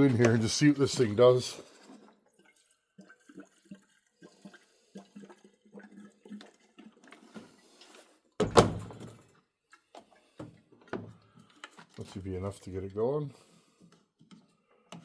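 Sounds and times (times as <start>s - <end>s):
fuel glugging from a can: 0.0s - 8.3s.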